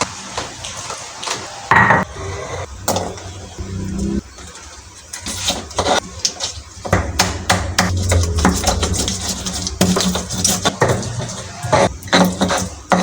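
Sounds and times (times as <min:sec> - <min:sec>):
kitchen utensils clattering: 0:09.2 - 0:13.0.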